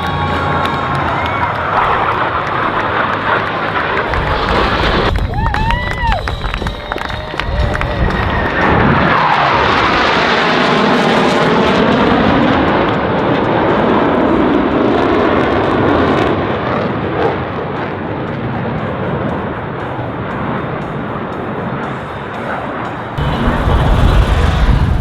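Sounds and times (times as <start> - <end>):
jets passing by loudly: 0.0 - 17.4, 23.2 - 25.0.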